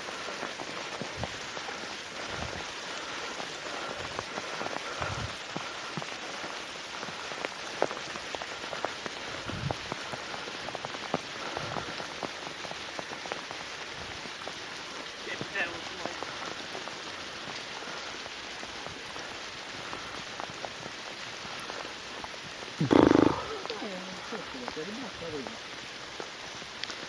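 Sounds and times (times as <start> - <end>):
sharp raindrop taps: 0.0 - 27.0
steady rain falling: 0.0 - 27.0.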